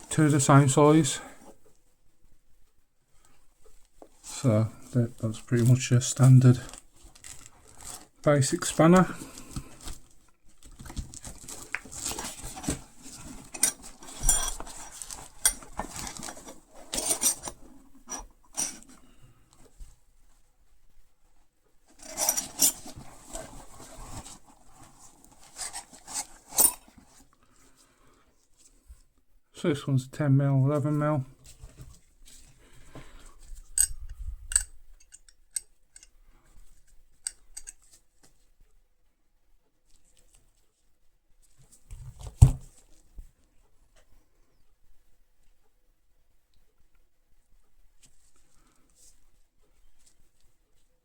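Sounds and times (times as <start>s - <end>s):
steel spanners clinking: 13.5s - 14.8s, 16.9s - 18.8s, 22.0s - 22.9s.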